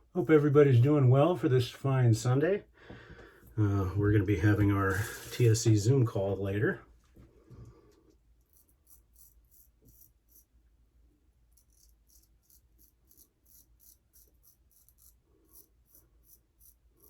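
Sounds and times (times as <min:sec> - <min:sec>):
razor scraping stubble: 0:04.5 - 0:05.7, 0:08.4 - 0:10.5, 0:11.5 - 0:17.0.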